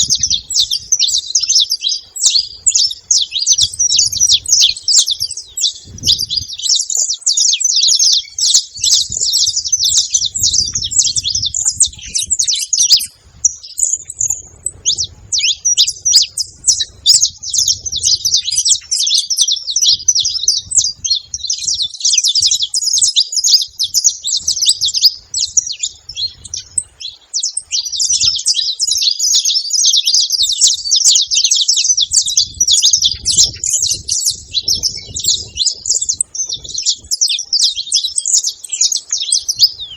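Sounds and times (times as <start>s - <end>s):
finches chirping and trilling: 0.0s - 39.9s.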